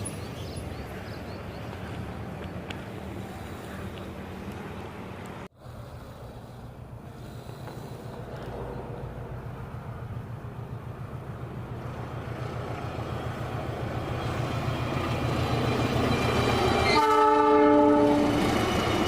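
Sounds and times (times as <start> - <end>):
diesel train engine: 0.0 - 19.0
train horn: 16.8 - 18.4.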